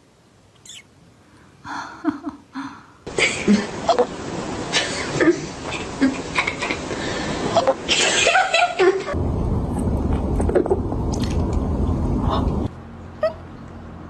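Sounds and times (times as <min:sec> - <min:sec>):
cat hiccuping: 0:00.6 - 0:00.9.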